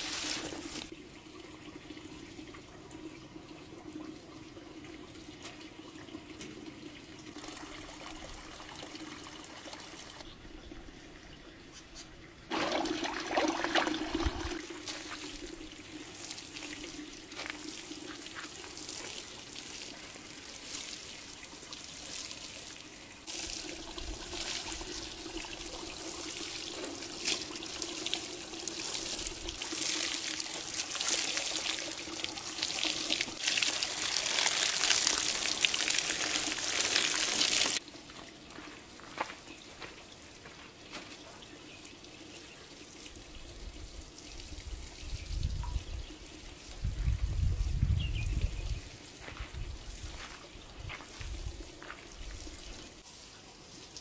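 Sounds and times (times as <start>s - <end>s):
tap water running into sink: 0.0s - 10.2s, 12.5s - 37.8s.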